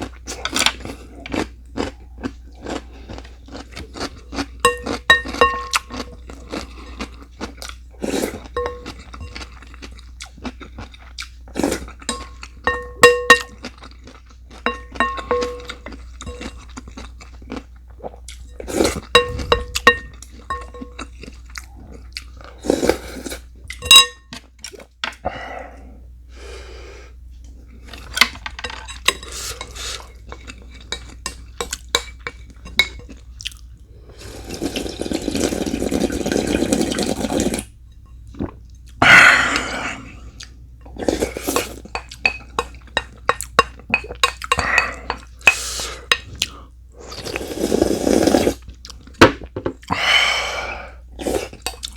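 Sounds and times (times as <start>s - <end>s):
spoon and chopsticks clinking on bowls: 4.6s - 6.1s, 8.6s - 9.6s, 12.0s - 13.7s, 14.5s - 16.7s, 18.5s - 21.1s, 23.7s - 24.4s, 41.9s - 46.3s
eating noises: 18.3s - 20.2s.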